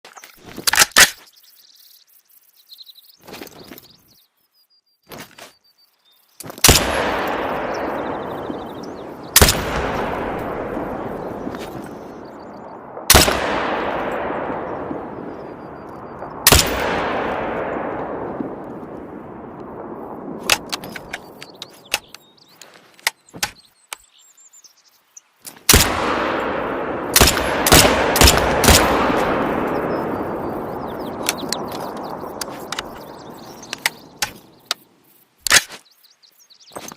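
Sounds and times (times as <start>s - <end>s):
rifle shots with echo: 6.6s - 22.1s, 25.7s - 34.8s.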